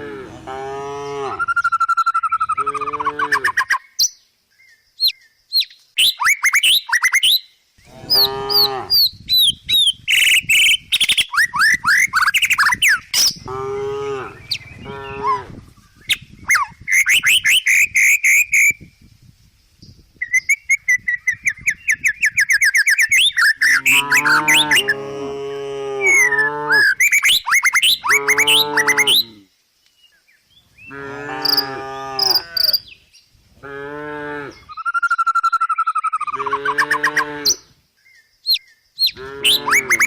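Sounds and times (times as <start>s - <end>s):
cows mooing: 0.0s - 1.5s, 7.9s - 9.0s, 13.4s - 15.5s, 23.7s - 27.0s, 28.1s - 29.4s, 30.9s - 32.8s, 33.6s - 34.6s, 36.4s - 37.6s, 39.1s - 40.0s
birds chirping: 1.0s - 18.8s, 19.8s - 25.0s, 26.1s - 33.4s, 34.3s - 40.0s.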